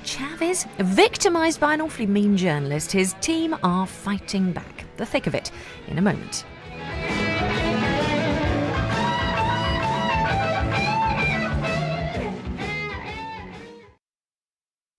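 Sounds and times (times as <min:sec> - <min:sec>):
electric guitar music with beat: 0:06.5 - 0:14.0.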